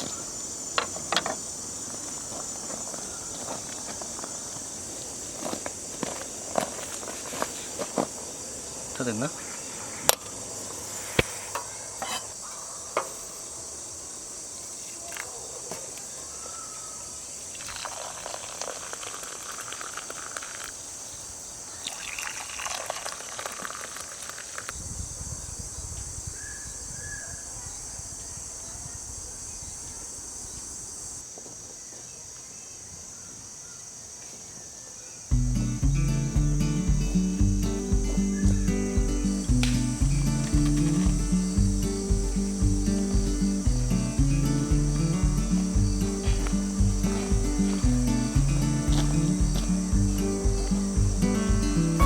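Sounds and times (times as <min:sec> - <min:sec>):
insects chirping: 0:00.0 - 0:52.0
liquid pouring: 0:17.6 - 0:20.7, 0:21.9 - 0:24.5.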